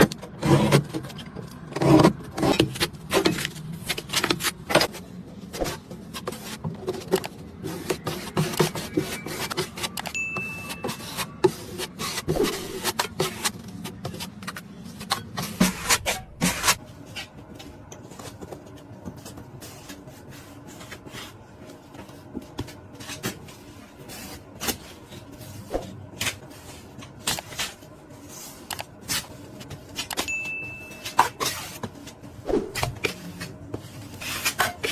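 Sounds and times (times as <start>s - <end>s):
taping knife scraping a wall: 0.0s - 5.0s, 5.6s - 10.1s, 10.8s - 17.3s, 31.4s - 34.9s.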